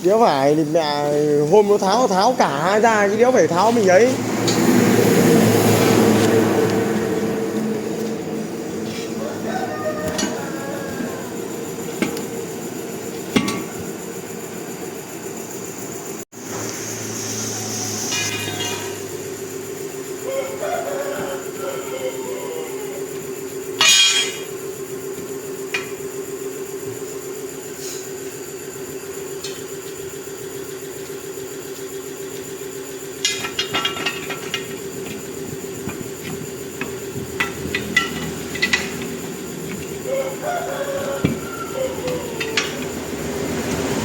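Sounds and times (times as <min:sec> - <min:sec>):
steady machine hum: 0:00.0 - 0:44.0
metal clanks and knocks: 0:08.8 - 0:14.1, 0:23.8 - 0:24.5, 0:33.2 - 0:44.0.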